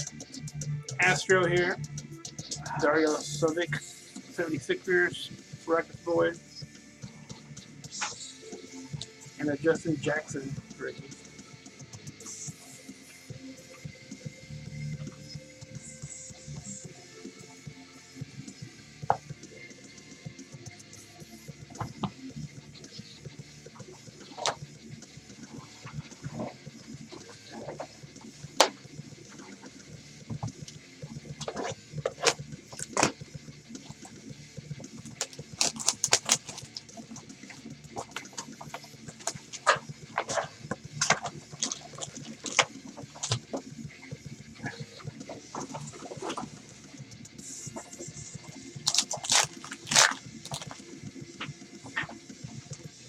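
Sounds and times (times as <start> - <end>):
trading cards rustling and crinkling: 35.0 - 43.6, 48.8 - 52.2.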